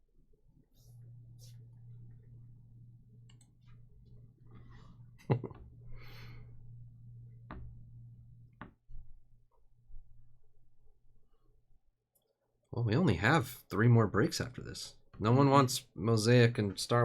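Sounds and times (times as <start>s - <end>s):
steady low hum: 0.2s - 11.4s.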